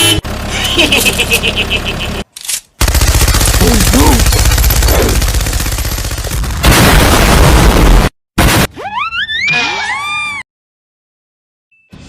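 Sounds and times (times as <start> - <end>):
rapid automatic gunfire: 2.8 - 7.6.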